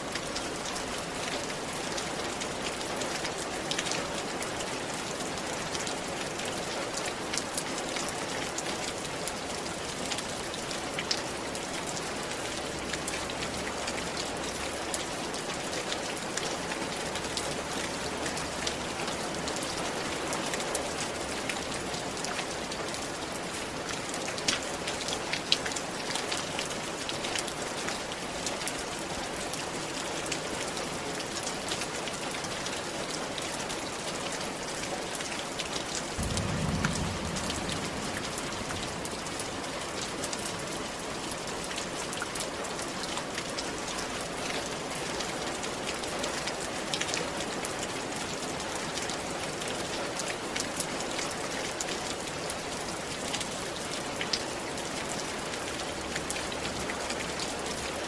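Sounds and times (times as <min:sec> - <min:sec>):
rain on a roof: 0:00.0 - 0:58.0
short low rumble: 0:36.2 - 0:40.1.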